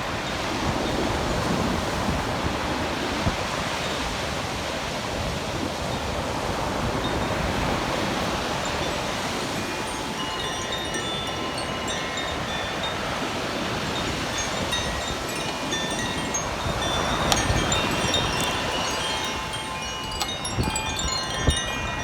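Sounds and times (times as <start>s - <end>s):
sea surf washing: 0.0s - 22.0s
wind buffeting the microphone: 0.0s - 22.0s
chime tinkling faintly: 7.1s - 22.0s.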